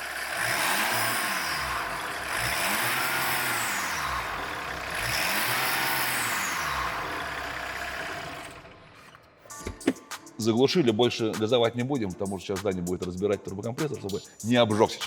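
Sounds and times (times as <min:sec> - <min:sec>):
diesel engine revving: 0:00.0 - 0:09.2
turbocharger whistling: 0:00.0 - 0:09.3.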